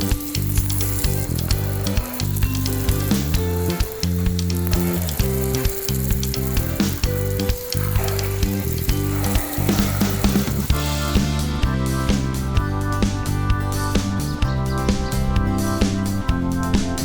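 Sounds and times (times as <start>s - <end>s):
crackling sizzling hiss: 0.0s - 12.4s
background music with low held notes: 0.0s - 17.0s.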